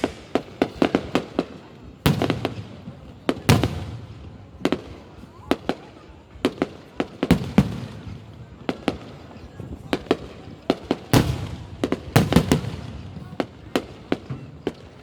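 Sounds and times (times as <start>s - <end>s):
fireworks banging: 0.0s - 15.0s.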